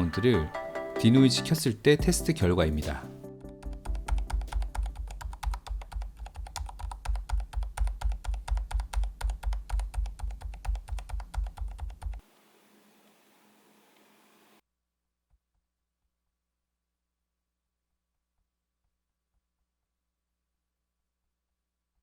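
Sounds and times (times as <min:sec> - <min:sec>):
soft keyboard keystrokes: 0:03.6 - 0:12.2.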